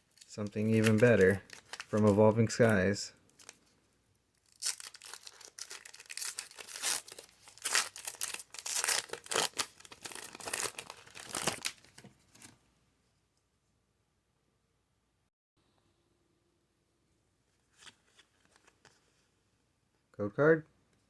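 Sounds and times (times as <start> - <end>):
foil wrapper tearing and crinkling: 0.0 - 3.6, 4.4 - 12.0.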